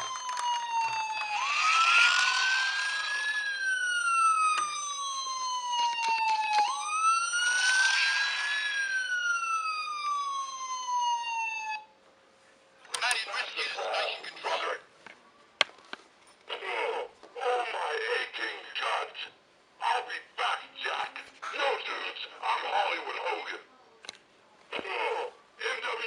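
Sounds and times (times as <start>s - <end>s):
electronic toy siren: 0.0s - 11.9s.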